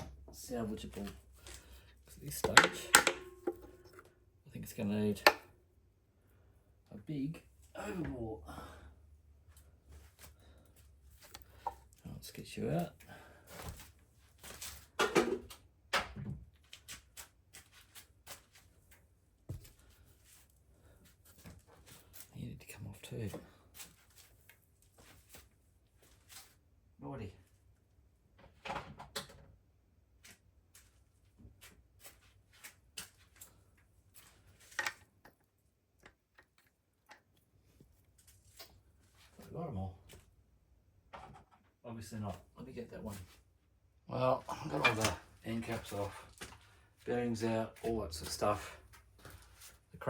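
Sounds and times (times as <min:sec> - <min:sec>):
sharp metal knocks: 0:02.4 - 0:04.1
metal engine parts clattering: 0:02.5 - 0:04.0.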